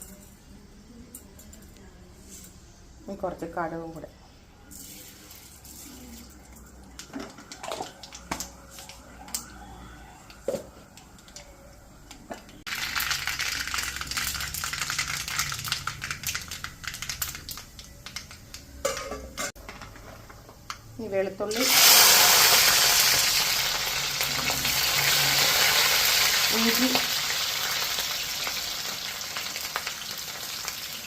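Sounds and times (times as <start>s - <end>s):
crackling sizzle: 0.0s - 31.0s
seeds frying in oil: 12.2s - 18.8s, 19.5s - 31.0s.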